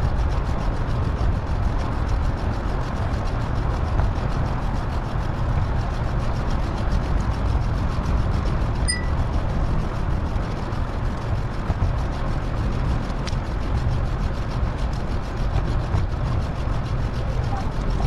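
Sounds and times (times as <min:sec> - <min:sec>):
brief high beep: 0:08.9 - 0:09.2.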